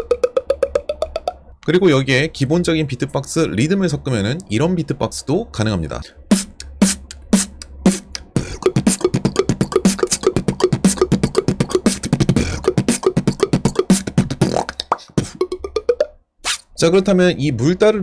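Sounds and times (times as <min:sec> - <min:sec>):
mouth beatboxing: 0:00.0 - 0:01.4, 0:06.2 - 0:16.7.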